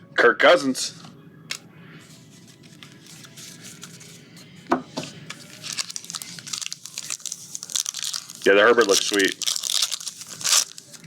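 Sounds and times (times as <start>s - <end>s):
trading cards being flipped: 2.3s - 4.2s
foil wrapper crinkling and tearing: 5.3s - 11.0s.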